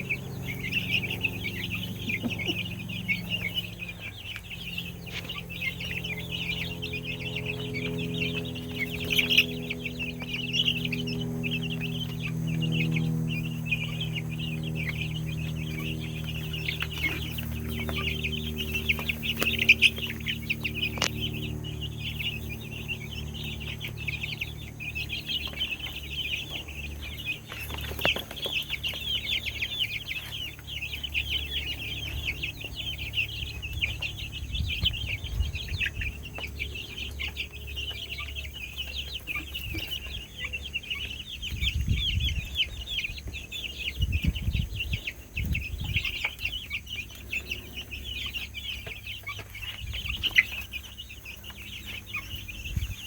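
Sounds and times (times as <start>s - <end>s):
chicks peeping: 0.0s - 53.0s.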